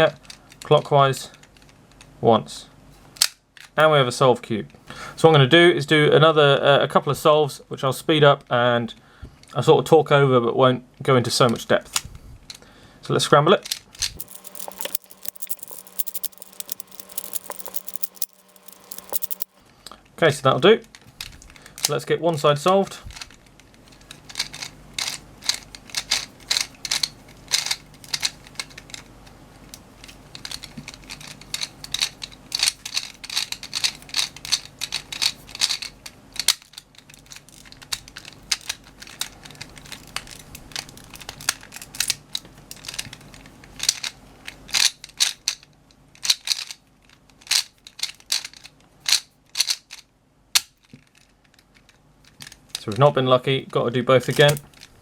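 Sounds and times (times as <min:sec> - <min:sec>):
plastic gears clicking: 0:14.0 - 0:19.5.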